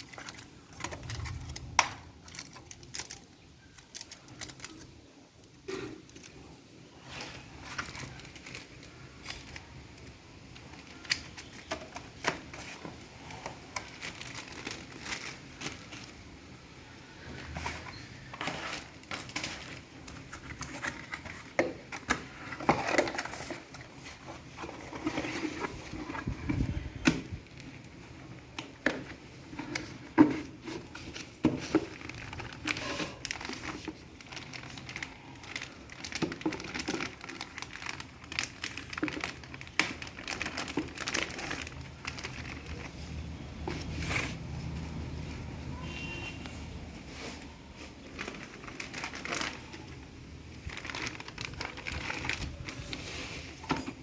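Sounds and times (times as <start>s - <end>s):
handling computer parts: 0.0s - 54.0s.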